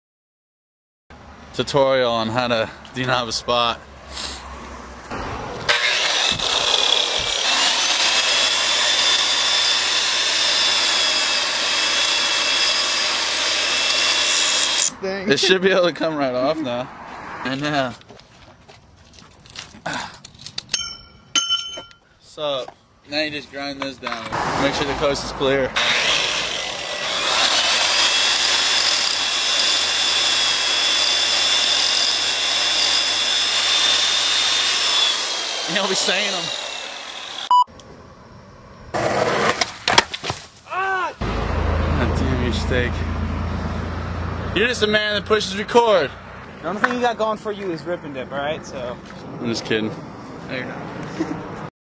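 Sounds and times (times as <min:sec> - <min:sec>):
angle grinder cutting metal: 0:05.6 - 0:15.4, 0:24.1 - 0:37.5.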